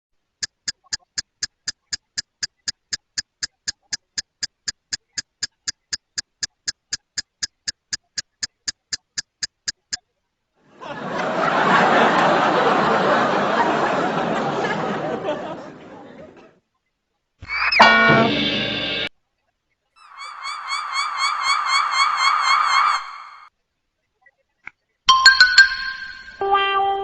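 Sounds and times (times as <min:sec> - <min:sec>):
rapid even ticking: 0:00.2 - 0:10.1
crowd chattering and laughing: 0:10.7 - 0:16.6.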